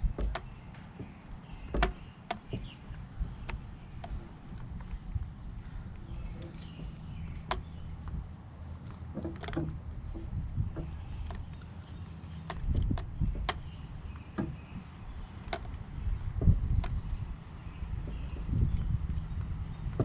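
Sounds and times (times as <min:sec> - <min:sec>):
equipment clicks and knocks: 0:00.0 - 0:05.2, 0:06.2 - 0:08.2, 0:08.8 - 0:11.7, 0:12.3 - 0:17.1.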